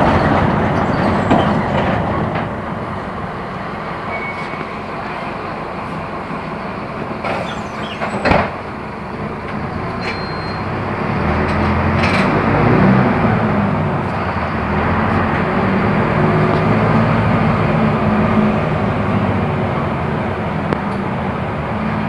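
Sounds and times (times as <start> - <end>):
bus diesel engine running: 0.0 - 22.0.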